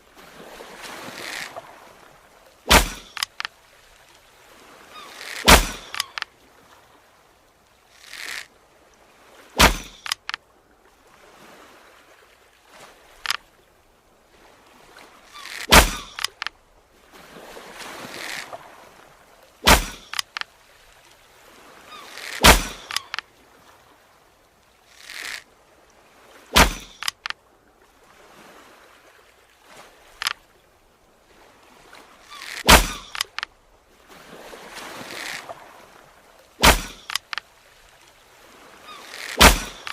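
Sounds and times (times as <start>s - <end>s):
arrow whooshing hiss: 2.7s - 3.2s, 5.2s - 6.0s, 15.5s - 16.3s, 19.7s - 20.2s, 22.2s - 23.0s, 26.6s - 27.1s, 32.4s - 33.2s, 36.6s - 37.2s, 39.1s - 39.9s
arrow shots cracking: 2.7s - 3.5s, 5.2s - 6.2s, 9.6s - 10.4s, 15.4s - 16.5s, 19.6s - 20.4s, 22.2s - 23.2s, 26.5s - 27.3s, 32.4s - 33.4s, 36.6s - 37.4s, 39.1s - 39.9s
faint clicks: 2.8s - 4.2s, 5.1s - 6.3s, 7.9s - 8.5s, 9.6s - 10.4s, 13.2s - 13.5s, 15.4s - 16.6s, 19.7s - 21.2s, 22.0s - 23.3s, 24.9s - 25.5s, 26.8s - 27.4s, 30.1s - 30.4s, 32.3s - 33.5s, 36.6s - 38.2s, 39.0s - 39.9s.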